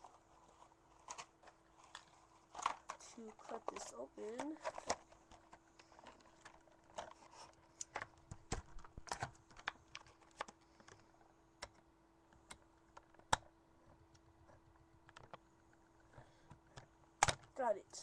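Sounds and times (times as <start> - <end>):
faint steady hum: 0.0 - 18.0
plastic packaging clicking: 7.8 - 11.0.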